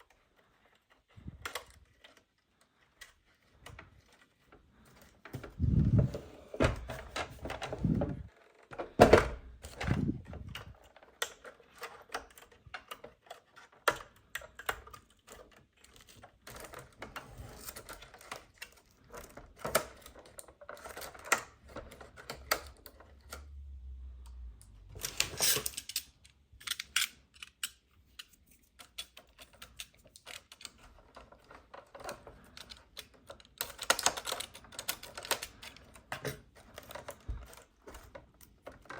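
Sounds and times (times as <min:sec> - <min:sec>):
plastic pieces clicking and tapping: 0:07.1 - 0:23.6, 0:24.2 - 0:38.9.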